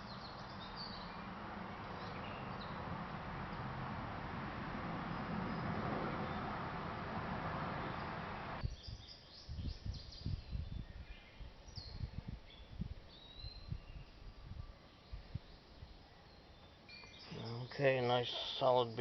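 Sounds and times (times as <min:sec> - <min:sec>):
birds chirping: 0:00.0 - 0:14.2, 0:14.9 - 0:19.0
steady rushing noise: 0:01.2 - 0:08.6.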